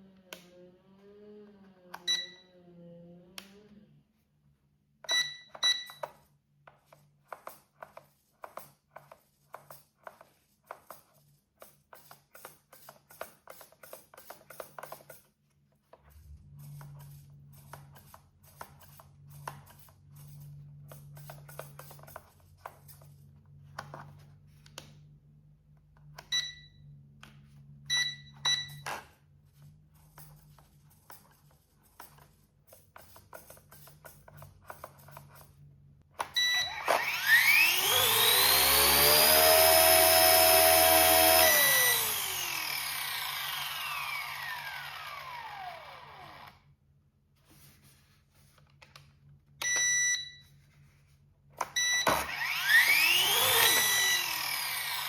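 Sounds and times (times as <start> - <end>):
short electronic beeps: 5.1 - 6.0, 49.6 - 50.5.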